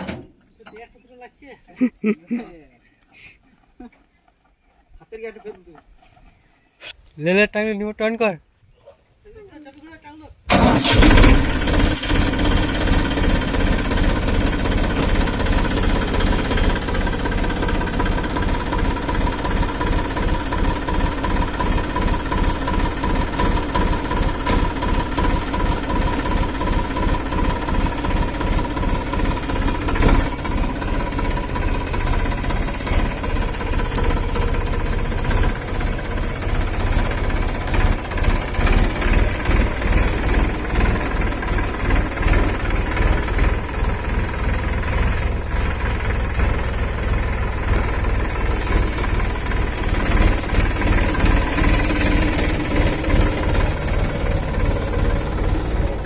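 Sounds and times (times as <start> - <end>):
tractor diesel engine under load: 0.0 - 1.2, 10.5 - 56.0
sharp knocks and rattles: 13.1 - 56.0.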